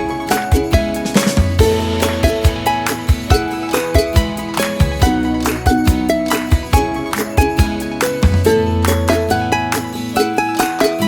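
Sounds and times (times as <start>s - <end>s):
upbeat music with plucked strings: 0.0s - 11.0s.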